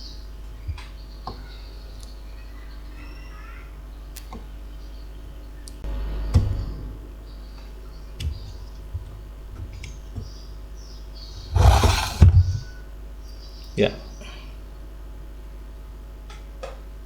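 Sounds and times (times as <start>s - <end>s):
rustling and knocks: 11.6s - 12.7s.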